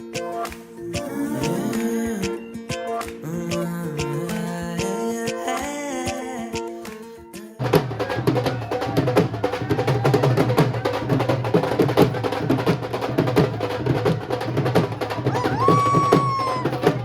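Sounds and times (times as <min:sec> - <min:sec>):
fast dense drumming: 0:07.6 - 0:17.0.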